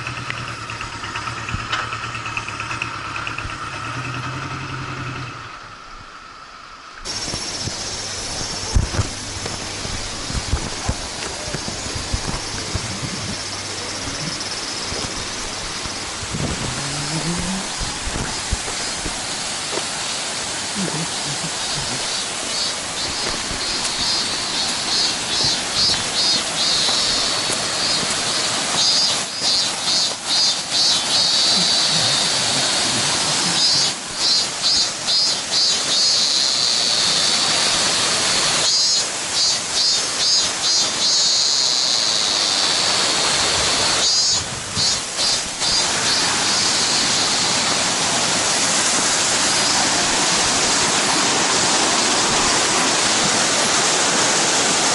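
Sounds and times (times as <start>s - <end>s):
high pulsing buzz: 0.0s - 37.6s
waterfall rushing: 7.0s - 54.9s.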